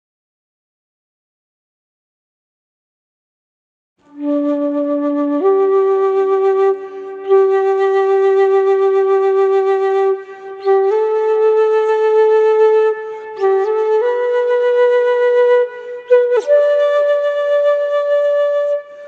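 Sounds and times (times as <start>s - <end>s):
flute playing slow melody: 4.0s - 19.0s.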